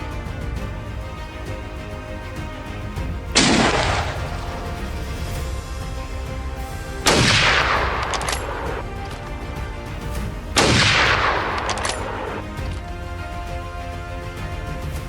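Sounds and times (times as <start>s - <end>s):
background music: 0.0s - 15.0s
rifle gunshots with echo: 7.1s - 8.8s, 10.6s - 12.5s.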